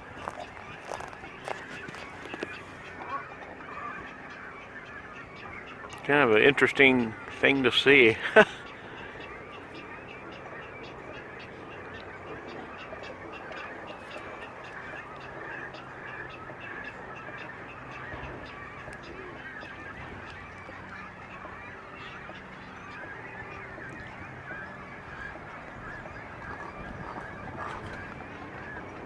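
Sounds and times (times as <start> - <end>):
waterbirds calling and honking: 0.0 - 29.0.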